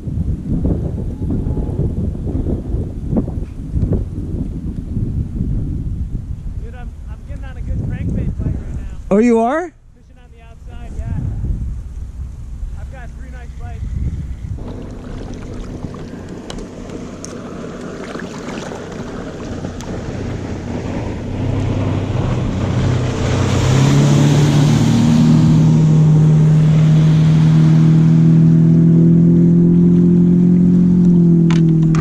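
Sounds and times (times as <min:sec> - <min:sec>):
motorboat engine: 0:05.0 - 0:32.0
water rushing: 0:11.7 - 0:32.0.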